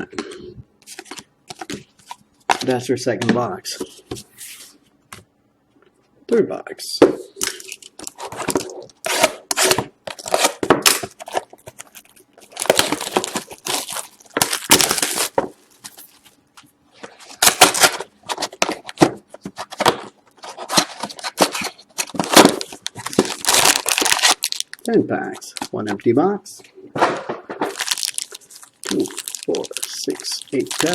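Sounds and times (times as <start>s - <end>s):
plastic wrap crinkling and tearing: 7.4s - 16.4s, 20.4s - 24.9s, 27.7s - 30.9s
cardboard rustling: 7.7s - 16.4s, 17.0s - 24.7s, 27.2s - 30.9s.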